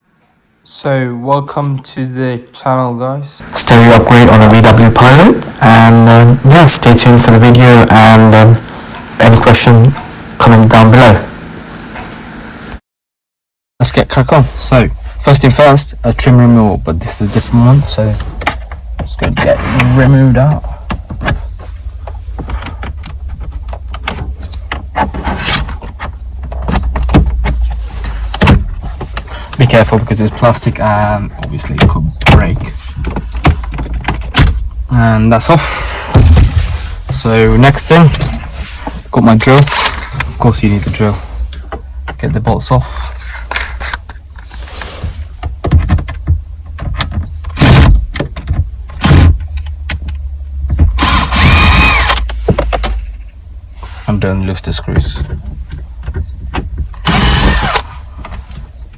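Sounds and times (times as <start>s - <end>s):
drill short loud bursts: 3.4s - 12.7s, 51.0s - 52.2s, 57.0s - 57.9s
cordless drill clicks and rattles: 51.0s - 52.3s, 57.0s - 57.9s.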